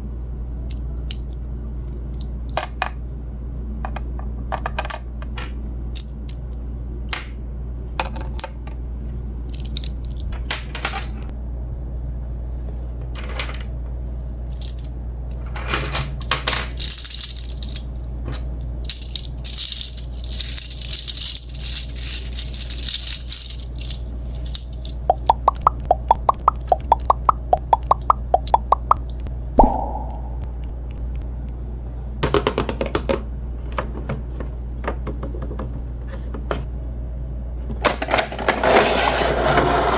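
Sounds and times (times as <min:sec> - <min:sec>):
plastic toy pieces clicking: 0:16.8 - 0:17.8, 0:18.9 - 0:29.0.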